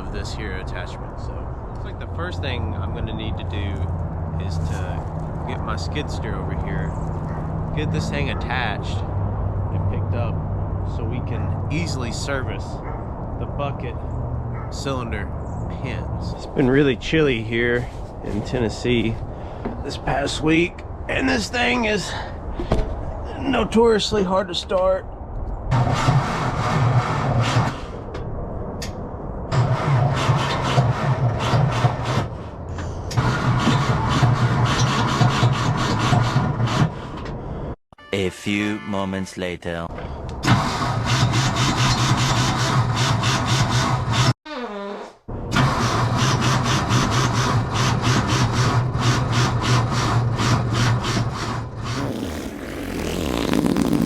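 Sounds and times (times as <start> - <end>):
engine cranking on starter: 33.2 - 36.9, 40.4 - 44.3, 45.5 - 52.0.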